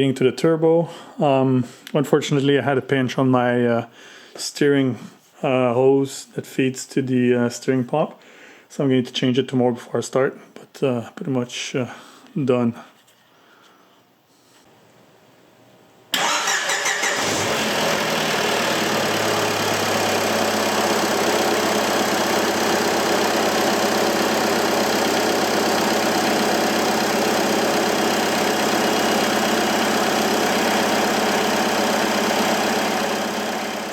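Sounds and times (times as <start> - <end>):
diesel engine idling: 16.2 - 33.9
starter motor cranking: 16.2 - 33.9.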